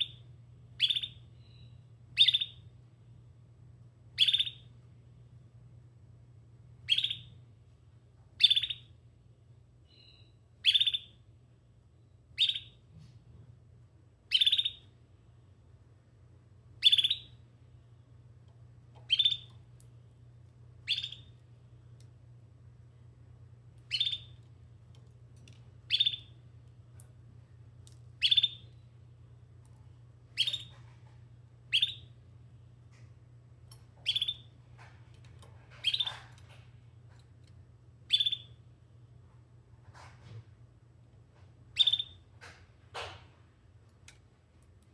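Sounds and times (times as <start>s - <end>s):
canary chirping: 0.8s - 2.7s, 4.2s - 4.7s, 6.8s - 7.4s, 8.4s - 8.9s, 9.9s - 11.2s, 12.4s - 12.8s, 14.3s - 14.9s, 16.8s - 17.4s, 19.0s - 19.8s, 20.8s - 21.4s, 23.8s - 24.5s, 25.8s - 26.4s, 28.2s - 28.9s, 30.3s - 31.0s, 31.7s - 32.2s, 34.0s - 34.6s, 35.6s - 36.6s, 38.0s - 38.6s, 41.7s - 42.2s.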